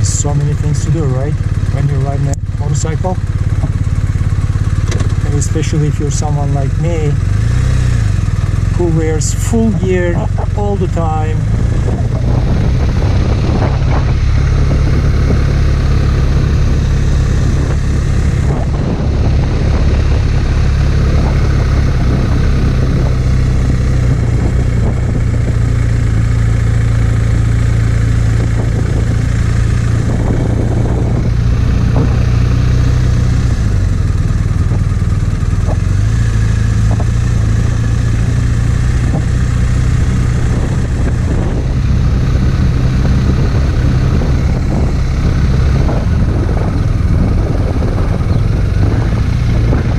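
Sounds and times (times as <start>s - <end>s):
motorcycle engine humming: 0.0s - 49.9s.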